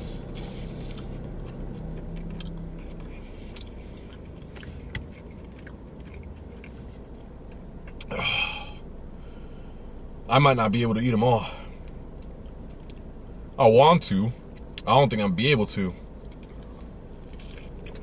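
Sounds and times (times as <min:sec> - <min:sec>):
steady low hum: 0:00.0 - 0:18.0
person chewing: 0:00.2 - 0:08.5, 0:11.8 - 0:13.1, 0:16.2 - 0:18.0.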